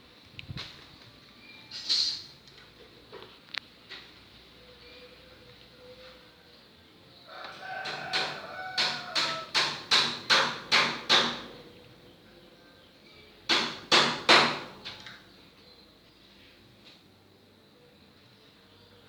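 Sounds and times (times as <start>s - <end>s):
sharp knocks: 7.8s - 11.6s, 13.5s - 15.0s.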